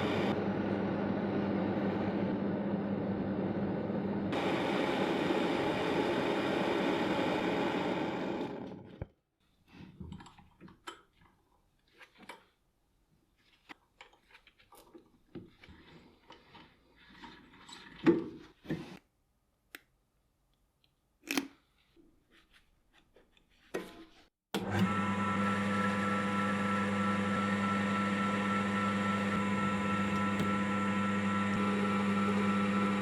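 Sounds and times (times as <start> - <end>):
power tool running: 0.0 - 0.5, 4.3 - 9.0, 24.6 - 33.0.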